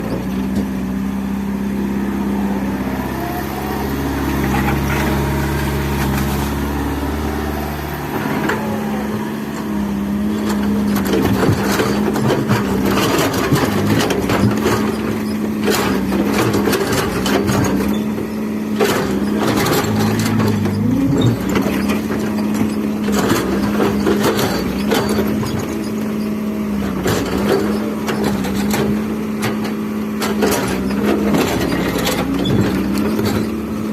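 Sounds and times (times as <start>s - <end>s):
excavator diesel engine running: 0.0s - 33.9s
metal clanks and knocks: 9.6s - 26.0s.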